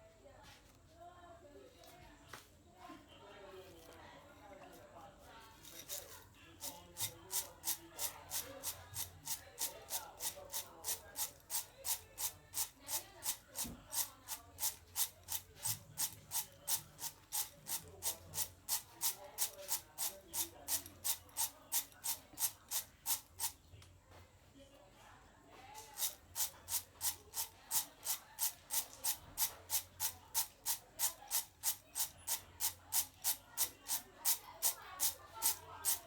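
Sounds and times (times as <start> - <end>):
dry rustling of peanut skins: 3.6 - 23.8.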